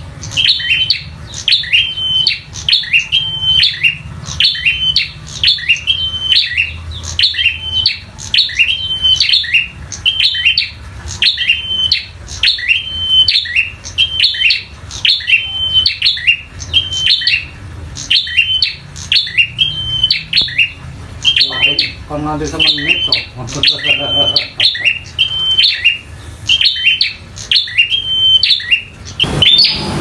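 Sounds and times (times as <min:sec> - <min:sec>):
bird calling with sharp notes: 0:00.0 - 0:30.0
low hum: 0:29.2 - 0:30.0.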